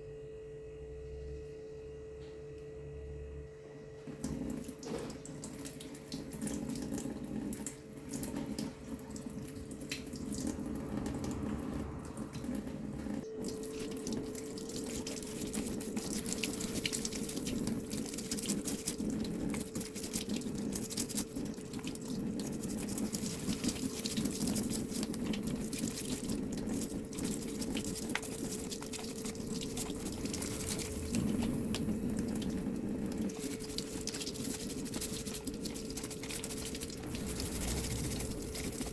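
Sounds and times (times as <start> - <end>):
water running: 4.1 - 38.9
faint steady whine: 27.2 - 38.9.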